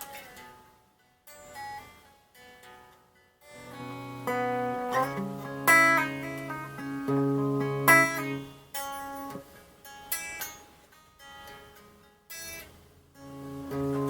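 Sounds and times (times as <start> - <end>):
clean guitar chords: 3.5 - 9.5, 13.2 - 14.0.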